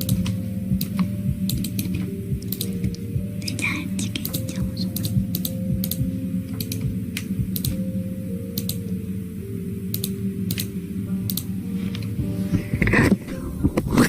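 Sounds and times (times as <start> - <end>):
sharp clicks: 0.0 - 3.0, 4.2 - 7.8
slow background music: 0.0 - 14.0.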